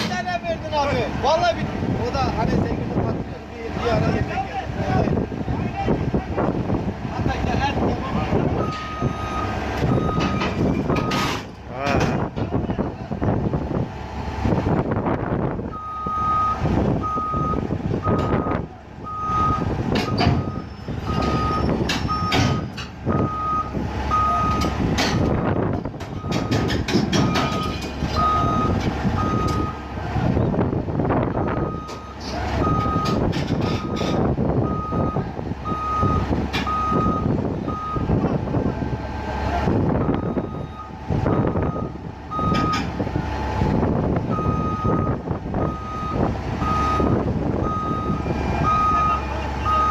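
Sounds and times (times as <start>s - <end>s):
diesel engine working: 0.0s - 49.9s
sharp metal knocks: 21.2s - 23.0s, 24.6s - 28.0s
backup alarm beeping: 26.2s - 29.8s, 34.6s - 38.1s, 44.3s - 49.9s.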